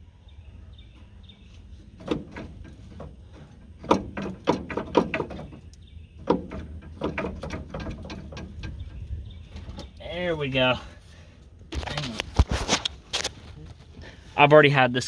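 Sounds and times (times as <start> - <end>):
metallic knocks and clanks: 1.6 - 10.0.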